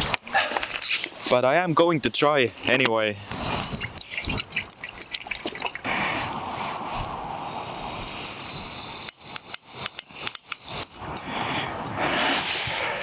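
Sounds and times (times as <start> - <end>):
wind: 0.0 - 13.0
gas hissing: 5.8 - 13.0
stove igniter clicking: 9.0 - 11.3.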